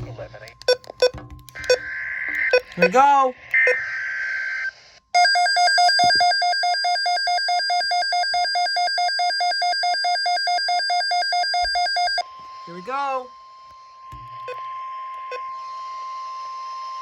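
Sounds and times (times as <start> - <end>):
rapidly pulsing alarm warble: 0.0 - 4.6.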